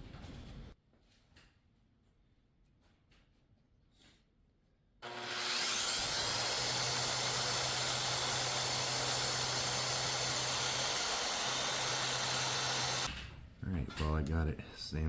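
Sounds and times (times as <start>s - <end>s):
belt sander whining: 5.0s - 13.1s.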